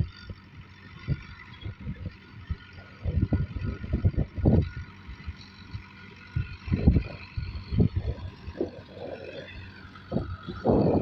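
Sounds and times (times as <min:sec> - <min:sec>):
tractor engine running: 0:00.0 - 0:11.0
wind buffeting microphone: 0:00.0 - 0:11.0.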